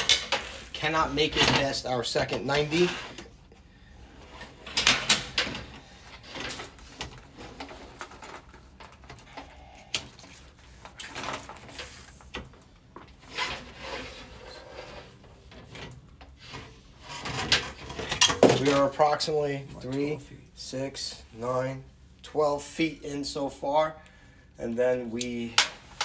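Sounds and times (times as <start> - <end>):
camera cable scraping inside metal pipe: 0.3 - 3.4, 13.2 - 18.3.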